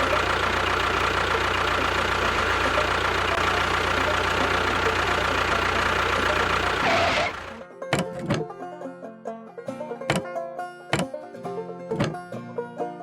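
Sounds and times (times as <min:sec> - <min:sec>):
motor pulsing with whine: 0:00.0 - 0:07.6.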